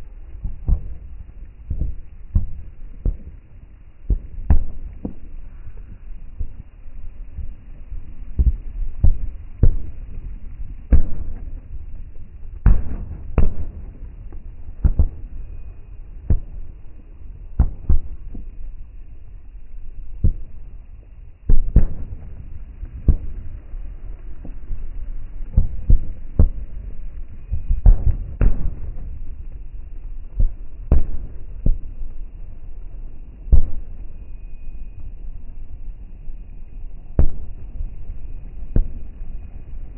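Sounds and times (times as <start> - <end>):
fireworks bangs: 8.4 - 18.6, 21.5 - 32.2.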